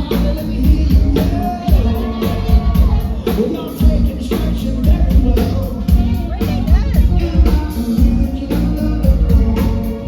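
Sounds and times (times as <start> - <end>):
song with sung melody and bass beat: 0.0 - 10.0.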